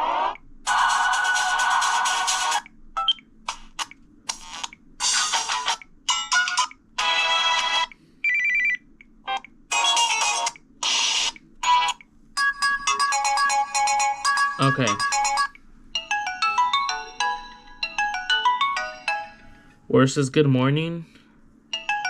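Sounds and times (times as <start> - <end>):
phone alarm tones: 7.3 - 8.8.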